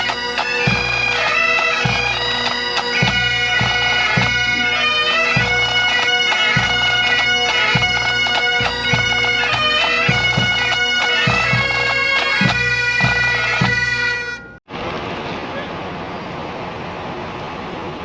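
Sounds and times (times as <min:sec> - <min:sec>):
bagpipes playing a tune: 0:00.0 - 0:14.6
low drum beats: 0:01.8 - 0:14.0.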